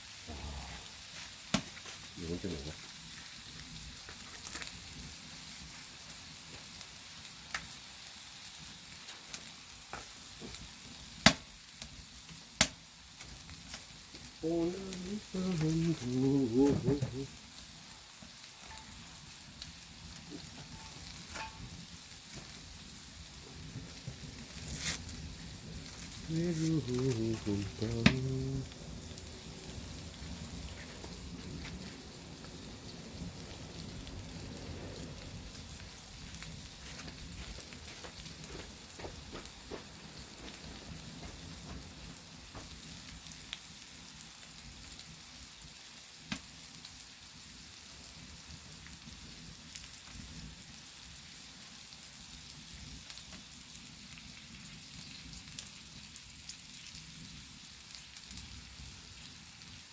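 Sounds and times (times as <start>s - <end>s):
meat sizzling on hot stone: 0.0s - 59.9s
sharp crackles: 18.4s - 45.1s.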